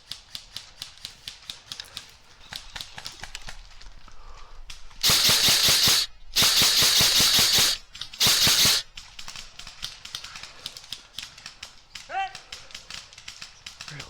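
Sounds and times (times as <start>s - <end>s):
airsoft gun firing full-auto: 5.0s - 9.4s.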